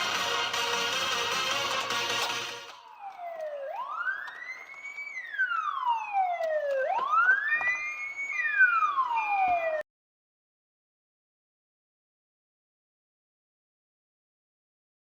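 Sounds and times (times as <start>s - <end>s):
emergency siren wailing: 0.0s - 9.9s.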